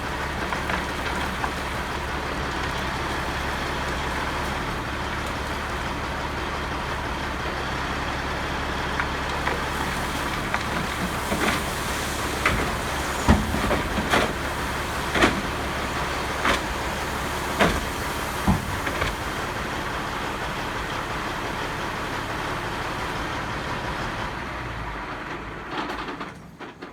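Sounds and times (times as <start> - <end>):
diesel truck engine running: 0.0 - 26.7
sharp bangs from truck: 9.6 - 20.5.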